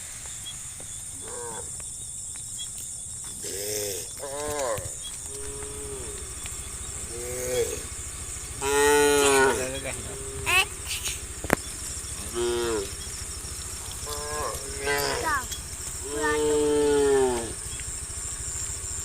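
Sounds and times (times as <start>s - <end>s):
cows mooing: 1.2s - 1.8s, 3.4s - 17.8s.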